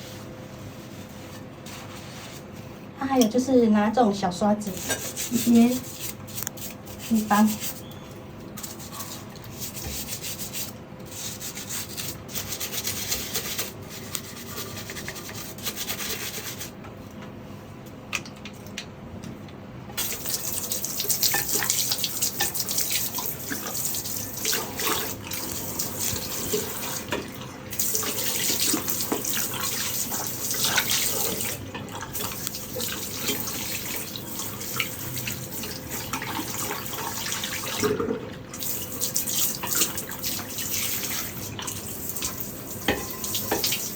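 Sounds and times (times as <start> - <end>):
tap water splashing into washbasin: 20.0 - 43.9.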